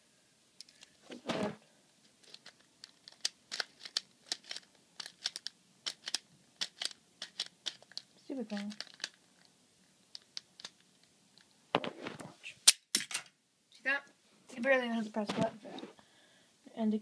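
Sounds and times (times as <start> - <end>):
plastic toy clicking and rattling: 2.2 - 9.5, 10.1 - 11.5.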